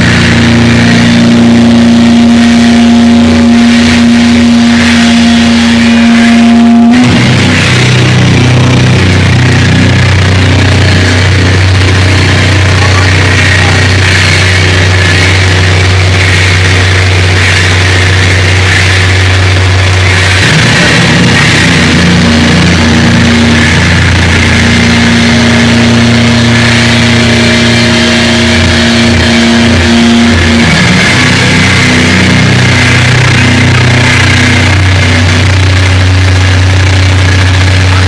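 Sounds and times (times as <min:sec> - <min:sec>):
distorted guitar and bass drone: 0:00.0 - 0:38.0.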